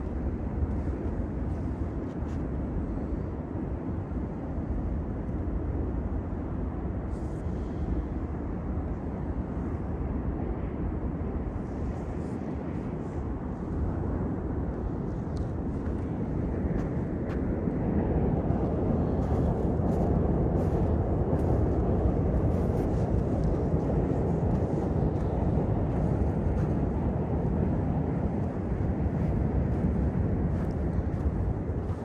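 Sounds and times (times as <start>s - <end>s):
city traffic rumble: 11.3s - 32.0s.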